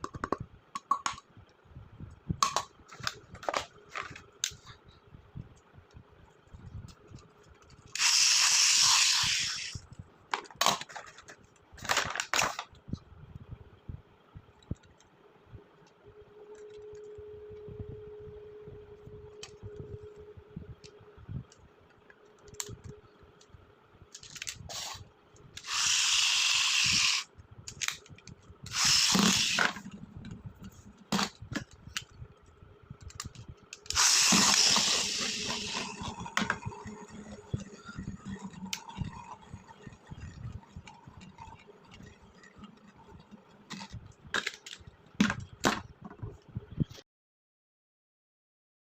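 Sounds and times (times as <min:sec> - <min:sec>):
loud hissing rips: 0:08.0 - 0:09.8, 0:28.7 - 0:29.7, 0:33.9 - 0:35.8.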